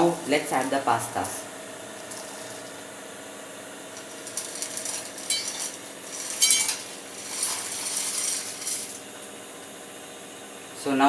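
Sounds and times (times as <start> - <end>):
dry pasta rattling into pot: 4.0 - 9.0.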